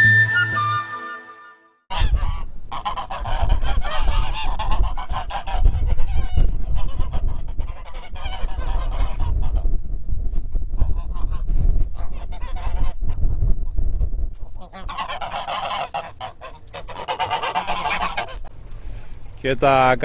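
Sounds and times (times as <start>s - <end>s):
background music: 0.0s - 1.8s
geese honking: 1.9s - 9.6s, 12.0s - 13.1s, 14.6s - 18.5s.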